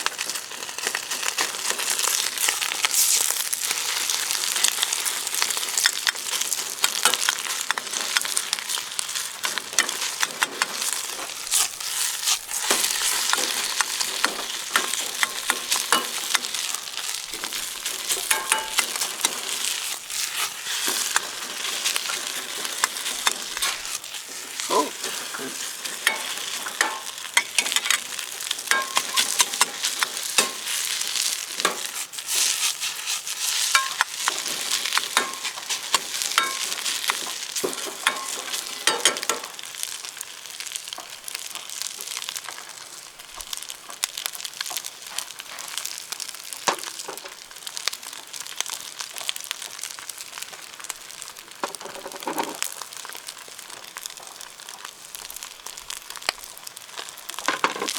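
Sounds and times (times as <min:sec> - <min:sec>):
rice sizzling in a wok: 0:00.0 - 0:57.9
spatula scraping a pan: 0:00.2 - 0:40.2.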